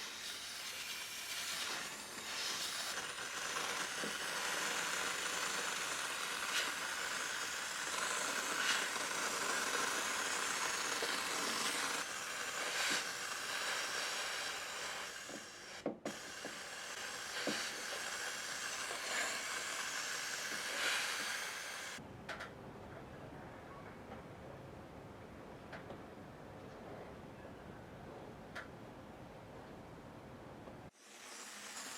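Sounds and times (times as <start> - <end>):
steam cleaner jet hissing: 0.0 - 22.0.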